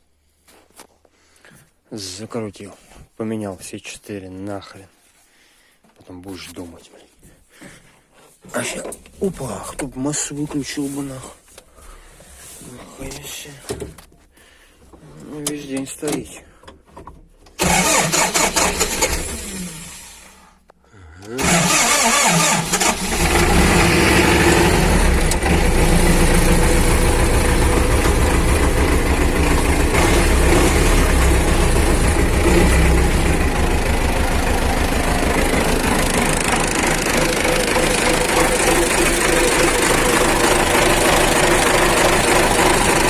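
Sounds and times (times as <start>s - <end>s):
diesel tractor engine starting: 17.5s - 20.4s, 21.2s - 43.0s.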